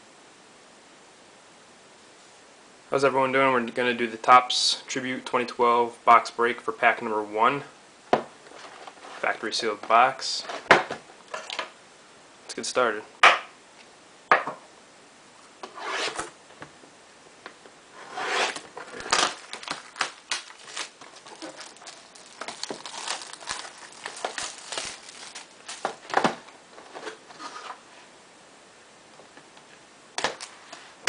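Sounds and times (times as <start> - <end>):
plastic wrap tearing and crinkling: 18.5 - 26.4.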